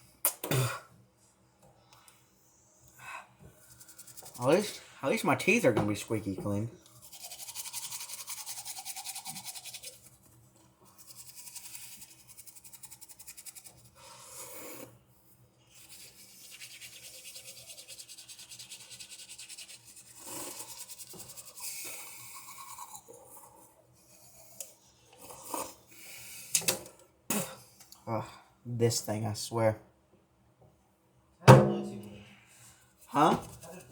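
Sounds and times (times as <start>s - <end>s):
toothbrush scrubbing teeth: 3.5s - 5.6s, 6.8s - 14.9s, 15.7s - 25.9s, 33.0s - 33.9s.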